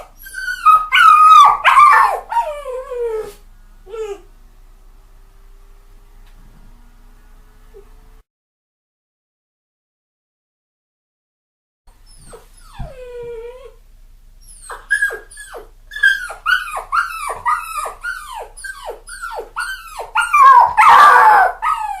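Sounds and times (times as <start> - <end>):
puppy whining and yipping: 0.0 - 4.3, 12.0 - 13.8, 14.4 - 22.0.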